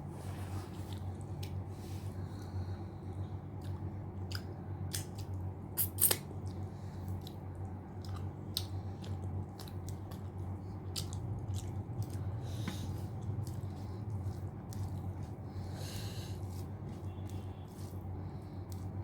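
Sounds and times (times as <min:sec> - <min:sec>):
steady low hum: 0:00.0 - 0:19.0
person chewing food: 0:00.7 - 0:01.6, 0:03.2 - 0:19.0
wet mouth clicks and smacks: 0:03.6 - 0:06.6.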